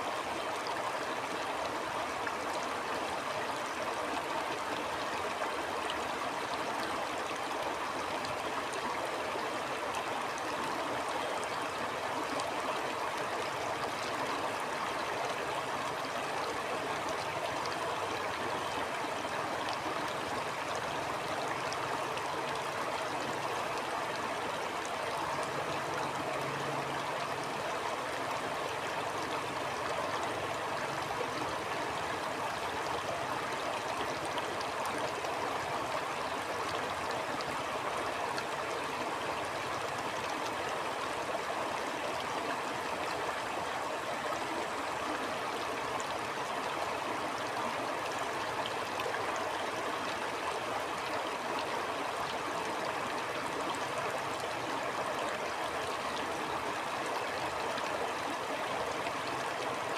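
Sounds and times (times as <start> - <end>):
stream flowing over rocks: 0.0 - 59.9.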